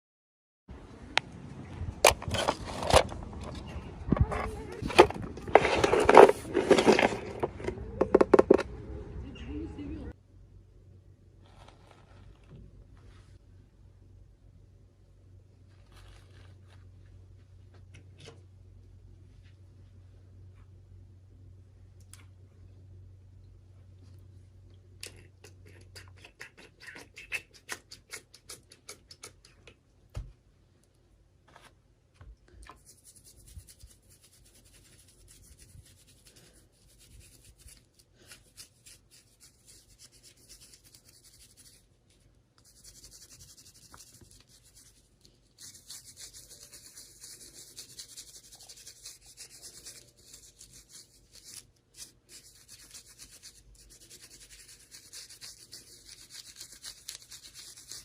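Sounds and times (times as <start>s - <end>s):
hissy rubbing and scratching: 32.8s - 58.0s.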